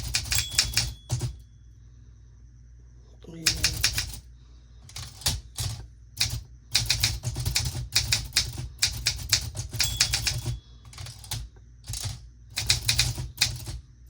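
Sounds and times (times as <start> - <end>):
typewriter key strikes: 0.0 - 1.4, 6.2 - 13.8.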